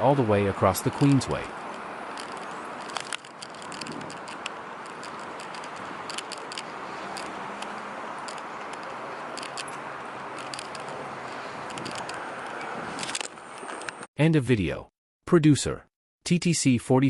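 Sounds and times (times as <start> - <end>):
street traffic hum: 0.0 - 14.1
sharp clicks and rattles: 0.8 - 14.1.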